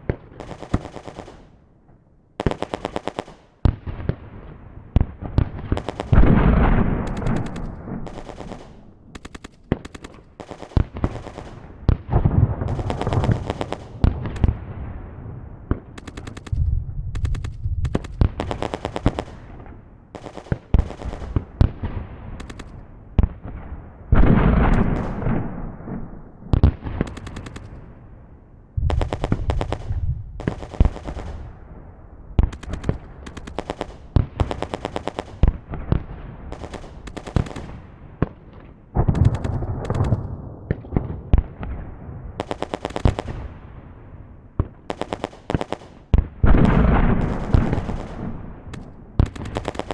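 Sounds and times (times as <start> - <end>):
heavy booming gunshots: 0.0 - 1.5, 2.4 - 28.2, 28.8 - 49.9
automatic gunfire: 0.4 - 1.5, 2.4 - 3.5, 5.8 - 11.9, 12.6 - 14.6, 16.0 - 19.5, 20.2 - 21.6, 22.4 - 22.8, 24.7 - 25.5, 27.0 - 27.8, 28.9 - 31.5, 32.4 - 35.7, 36.5 - 37.8, 39.1 - 40.3, 42.4 - 43.4, 44.9 - 49.9
single gunshots: 5.7 - 14.8, 28.9 - 31.6, 46.5 - 49.9.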